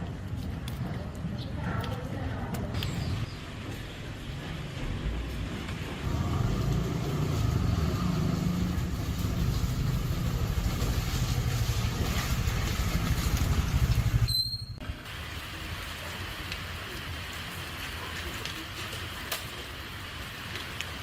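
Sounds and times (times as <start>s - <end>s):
vehicle engine rumbling: 0.0s - 15.1s.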